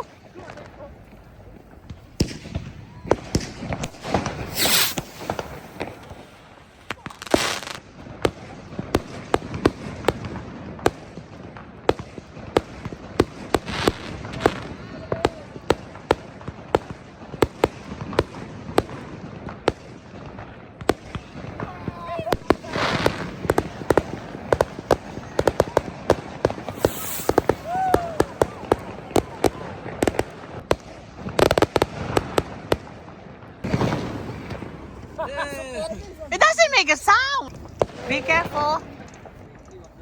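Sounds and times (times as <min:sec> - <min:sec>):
fireworks sharp cracks: 0:00.0 - 0:19.8, 0:20.8 - 0:35.2, 0:36.3 - 0:39.6
fireworks hissing bursts: 0:00.5 - 0:07.8, 0:21.4 - 0:30.2.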